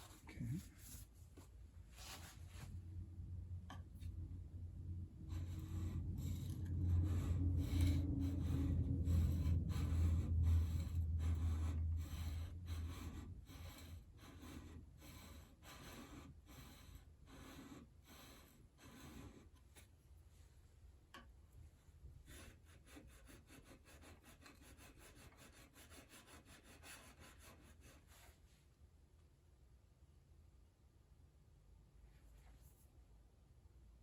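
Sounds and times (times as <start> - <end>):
low hum: 2.6 - 13.0.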